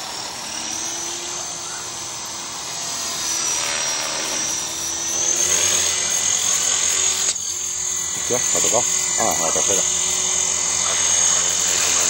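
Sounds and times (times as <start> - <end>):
model helicopter rotor whine: 0.0 - 12.0.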